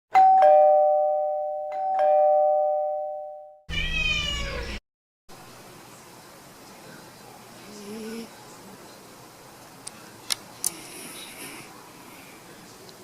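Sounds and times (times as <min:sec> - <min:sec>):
two-tone doorbell chime: 0:00.1 - 0:03.6
cat meowing: 0:03.7 - 0:04.8
faint room noise: 0:03.8 - 0:13.0.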